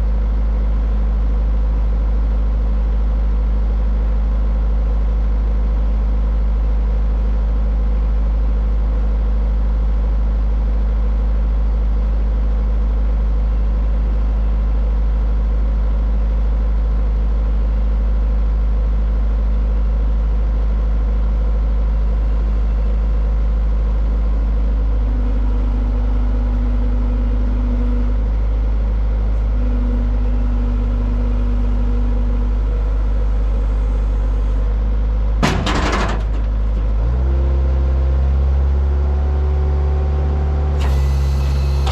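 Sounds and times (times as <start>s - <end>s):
diesel engine under load: 12.7s - 41.9s.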